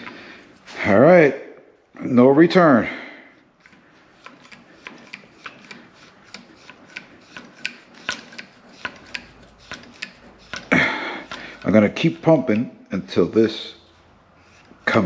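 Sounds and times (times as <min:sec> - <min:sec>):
crimping tool clicks and scrapes: 0:03.6 - 0:11.8.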